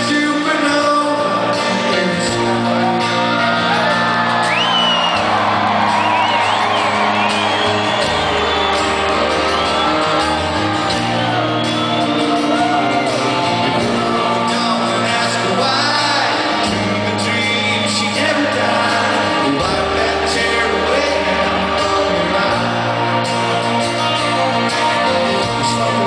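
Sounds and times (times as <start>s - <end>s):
lead vocal singing: 0.0s - 26.0s
live rock band playing: 0.0s - 26.0s
crowd shouting and whooping: 0.6s - 26.0s.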